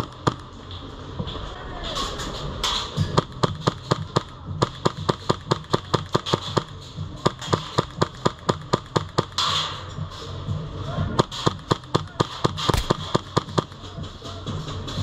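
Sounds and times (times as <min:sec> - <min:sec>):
airsoft gun rapid shots: 0:12.7 - 0:13.5.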